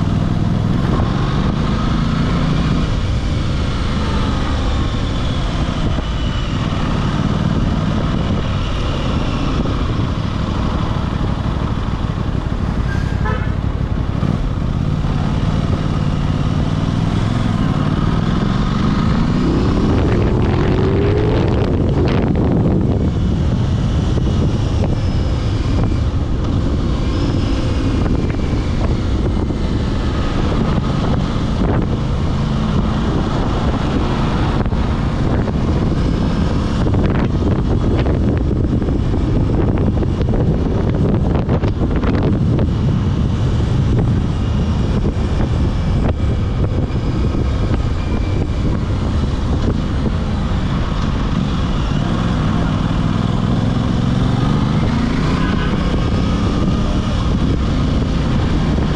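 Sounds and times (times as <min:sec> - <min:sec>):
motorcycle engine running: 0:00.0 - 0:58.9
wind and road noise: 0:00.0 - 0:58.9.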